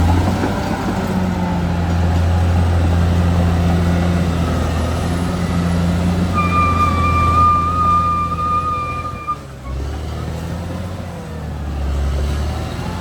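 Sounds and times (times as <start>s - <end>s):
bulldozer diesel engine droning: 0.0s - 13.0s
steady high tone: 6.3s - 9.5s.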